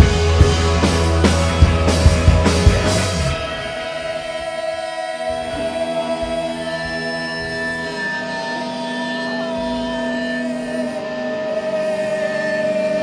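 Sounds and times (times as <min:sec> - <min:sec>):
loud drum kit hits: 0:00.0 - 0:04.8
rock band playing: 0:00.0 - 0:13.0.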